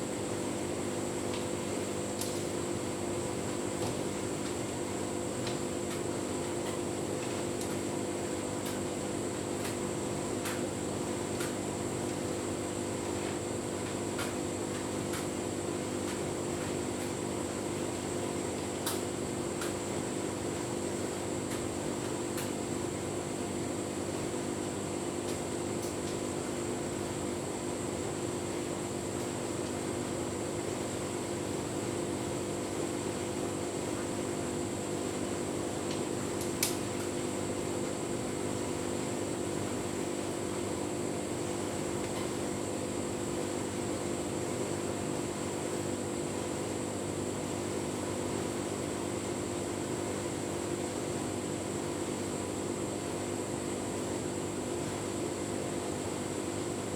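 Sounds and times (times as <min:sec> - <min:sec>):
light irregular ticks: 0:35.9 - 0:37.1.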